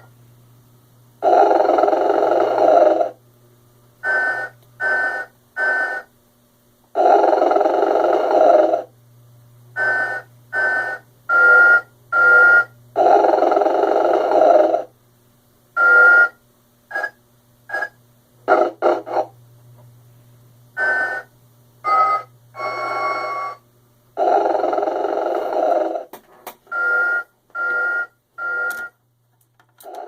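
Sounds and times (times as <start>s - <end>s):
low steady hum: 0.0s - 30.0s
toy figure snoring: 1.2s - 3.2s, 7.0s - 8.9s, 13.0s - 14.9s, 18.5s - 19.4s, 24.2s - 26.1s.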